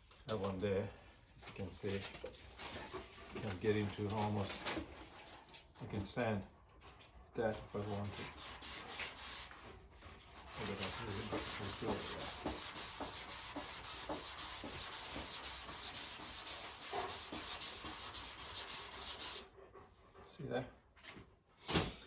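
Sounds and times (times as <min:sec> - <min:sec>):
sandpaper rasping on car panel: 0:10.5 - 0:19.5.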